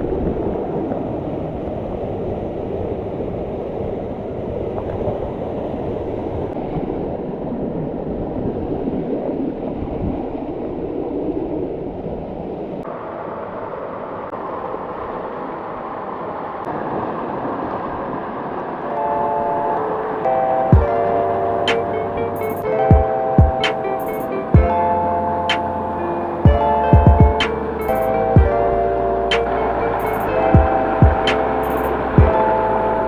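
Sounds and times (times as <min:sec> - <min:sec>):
mountain stream and waterfall: 0:09.7 - 0:33.0
music notes: 0:18.9 - 0:33.0.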